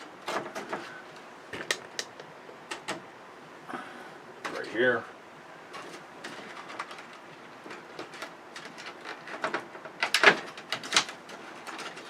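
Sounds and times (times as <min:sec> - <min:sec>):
plastic and metal parts rattling: 0:05.7 - 0:12.0.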